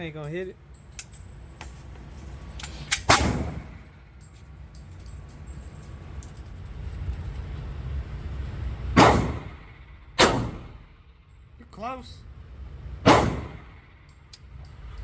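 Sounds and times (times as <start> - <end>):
pistol shots echoing indoors: 9.0 - 10.8, 13.0 - 13.8.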